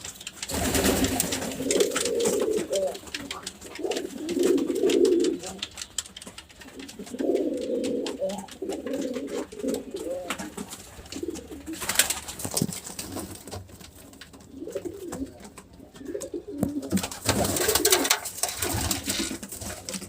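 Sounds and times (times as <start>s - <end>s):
pigeons cooing: 0.0s - 13.6s, 14.3s - 20.0s
rustling and clicking: 0.0s - 20.0s.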